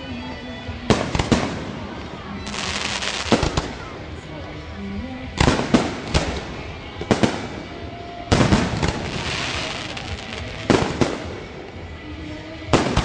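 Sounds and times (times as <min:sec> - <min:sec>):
firework crackling shower: 0:01.0 - 0:04.0, 0:05.4 - 0:11.9.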